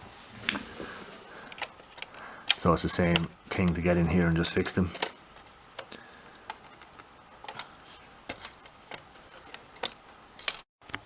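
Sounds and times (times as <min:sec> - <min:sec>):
hands clicking plastic parts: 0:01.4 - 0:03.9, 0:04.5 - 0:11.0.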